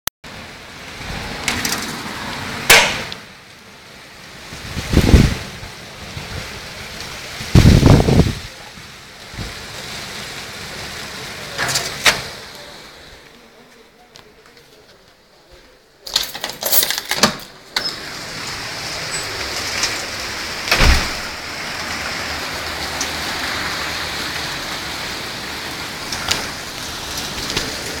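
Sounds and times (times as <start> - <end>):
steady rain: 0.2 - 28.0
wind noise: 4.4 - 9.8.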